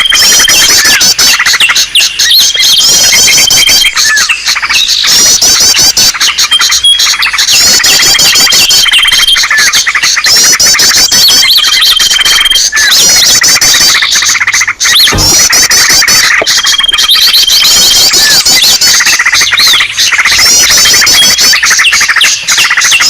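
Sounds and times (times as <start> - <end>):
high bird whistle: 0.0 - 23.0
songbirds twittering and trilling: 0.0 - 23.0.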